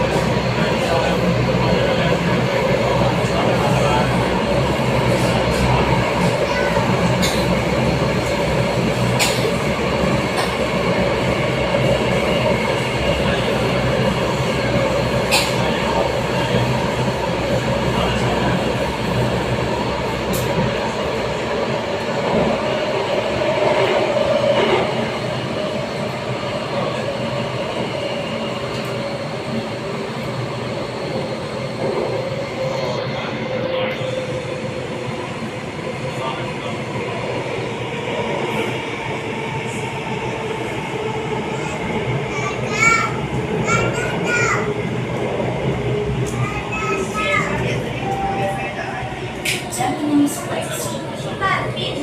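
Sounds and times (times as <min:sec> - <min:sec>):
train wheels rumbling on rail: 0:00.0 - 0:52.0.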